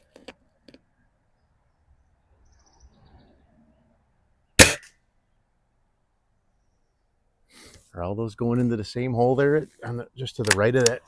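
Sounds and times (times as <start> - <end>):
air rifle shot crack: 4.6 - 4.9
faint handling clicks: 10.4 - 11.0.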